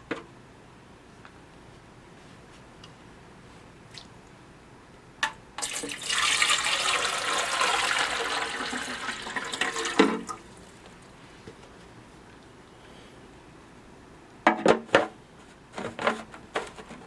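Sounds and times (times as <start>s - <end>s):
water running into a tank: 5.2s - 11.0s.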